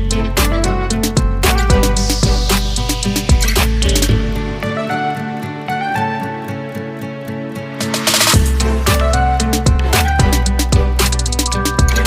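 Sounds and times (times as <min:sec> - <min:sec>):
bass and drums beat: 0:00.0 - 0:04.7, 0:07.8 - 0:12.0
plucked guitar melody: 0:00.0 - 0:12.0.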